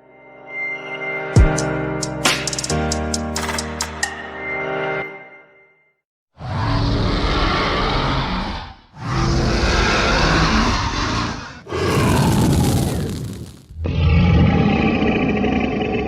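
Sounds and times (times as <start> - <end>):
growling monster roars: 6.4 - 16.0.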